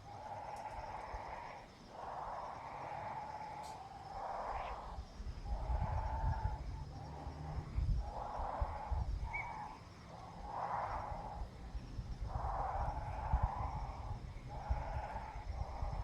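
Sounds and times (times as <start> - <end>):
low rumble: 4.0 - 16.0.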